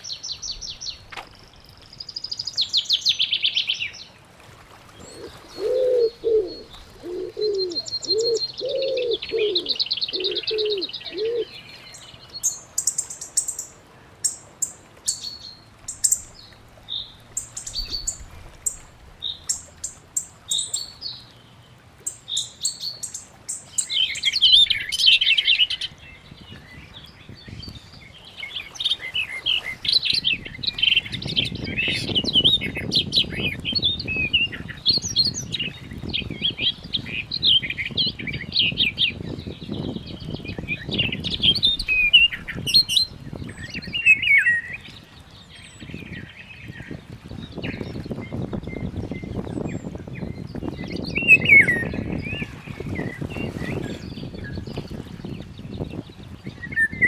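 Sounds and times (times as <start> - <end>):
birds chirping and chattering: 5.0 - 33.6.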